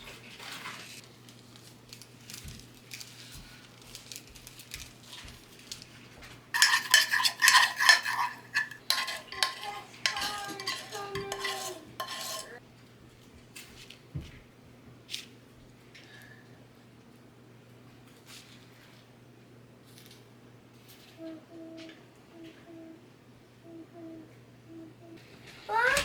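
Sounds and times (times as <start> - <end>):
dishes and cutlery clattering: 6.6 - 12.6.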